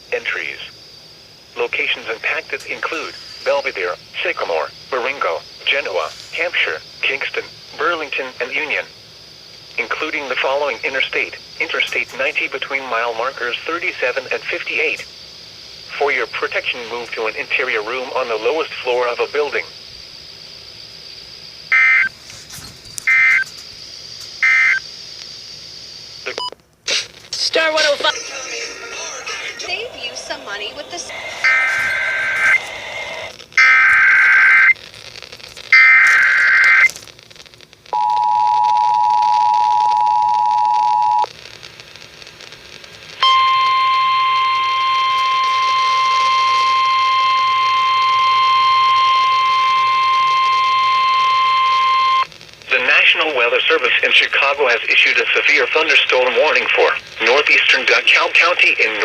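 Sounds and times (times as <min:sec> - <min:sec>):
faint radio hiss: 0:00.0 - 0:59.0
shrill digital squawks: 0:29.5 - 0:34.7
two-tone attention signal: 0:31.4 - 0:32.6, 0:43.2 - 0:52.2.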